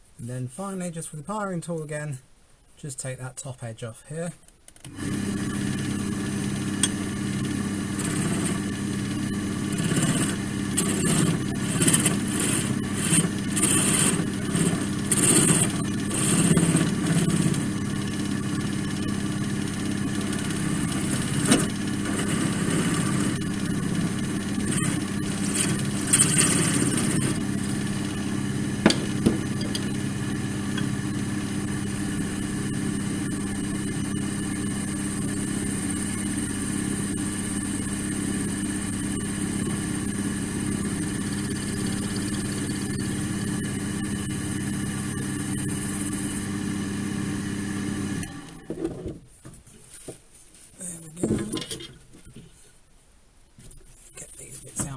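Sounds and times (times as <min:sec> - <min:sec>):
wood lathe motor hum: 0:04.9 - 0:49.0
tool scraping spinning wood: 0:05.1 - 0:34.2.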